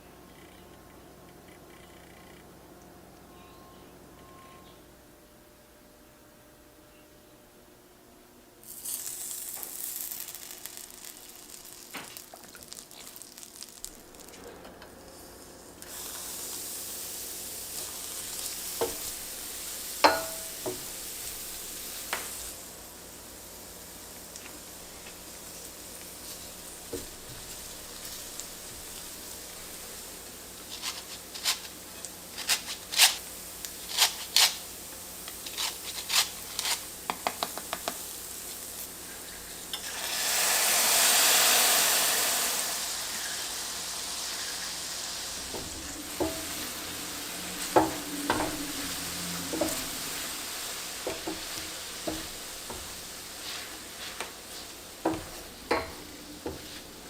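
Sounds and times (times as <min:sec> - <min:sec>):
food sizzling in a pan: 0:08.6 - 0:57.0
utensil knocking against pan: 0:20.0 - 0:20.9, 0:55.1 - 0:56.7.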